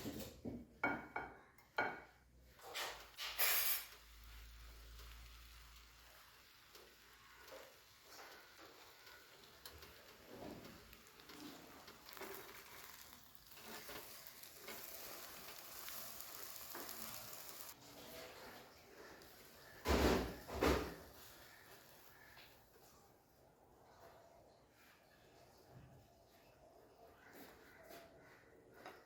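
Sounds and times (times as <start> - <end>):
kitchen handling noises: 1.9 - 4.0
food sizzling in a pan: 2.6 - 22.7.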